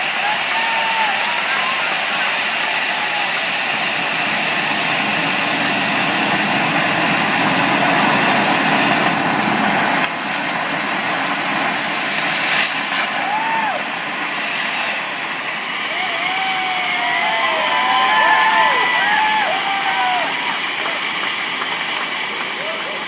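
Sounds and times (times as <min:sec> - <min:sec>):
pyrotechnic fountains hissing: 0:00.0 - 0:23.0
sharp crack: 0:11.2 - 0:13.4.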